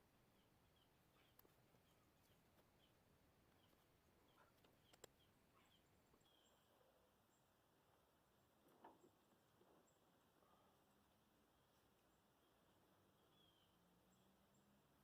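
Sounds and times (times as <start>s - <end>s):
small bird chirping: 0.3s - 7.6s, 11.6s - 14.8s
tiny clicks: 4.6s - 5.3s.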